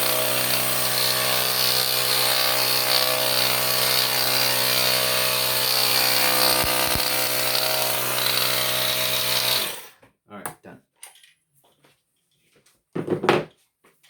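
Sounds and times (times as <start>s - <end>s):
air compressor motor humming: 0.0s - 9.9s.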